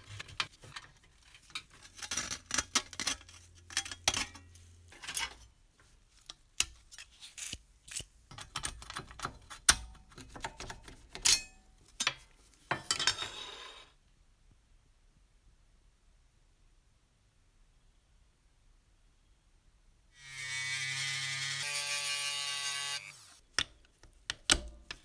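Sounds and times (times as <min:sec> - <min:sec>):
metal parts and tools clinking: 0:10.3 - 0:13.8.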